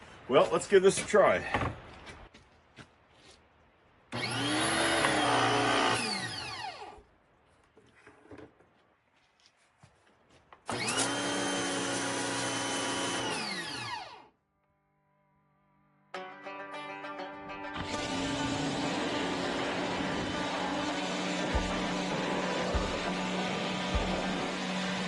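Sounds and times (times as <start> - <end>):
electric pressure washer whining: 4.2 - 6.9, 10.7 - 14.3, 17.8 - 25.0.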